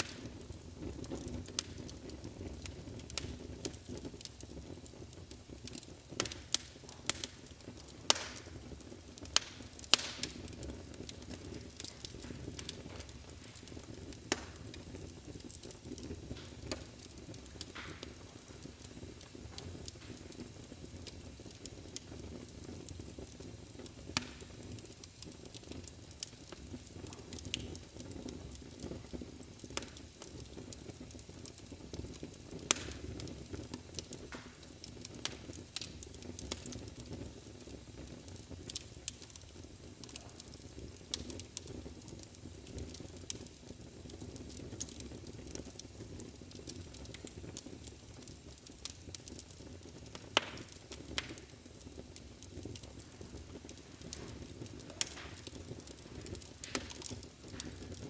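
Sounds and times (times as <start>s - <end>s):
fire crackling and popping: 0.0s - 58.0s
low rumble of flames: 0.0s - 58.0s.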